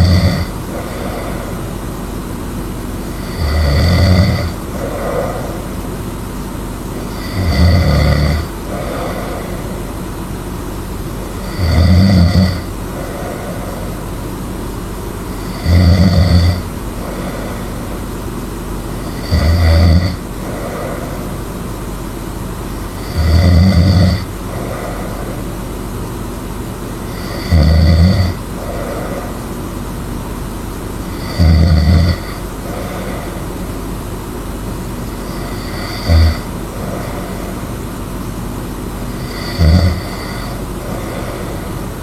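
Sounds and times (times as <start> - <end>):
person snoring loudly: 0.0 - 1.8, 3.0 - 6.0, 6.9 - 10.0, 11.2 - 14.0, 15.3 - 18.2, 19.0 - 21.6, 22.8 - 25.7, 27.0 - 29.6, 31.1 - 33.8, 35.0 - 37.8, 39.1 - 42.0
soft breath: 0.0 - 3.3, 4.4 - 7.4, 8.4 - 11.6, 12.6 - 14.5, 16.9 - 19.2, 20.2 - 22.0, 24.4 - 26.3, 28.4 - 29.8, 32.2 - 34.1, 35.0 - 37.9, 39.1 - 42.0
steady background hiss: 0.0 - 42.0.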